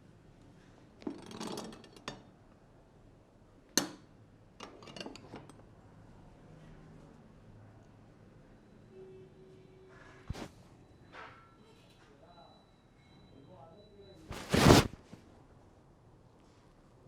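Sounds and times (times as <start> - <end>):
hands rubbing head: 14.3 - 15.2.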